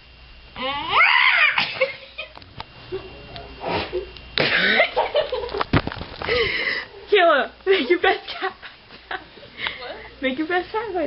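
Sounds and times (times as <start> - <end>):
person imitating a cat fight: 0.6 - 1.6.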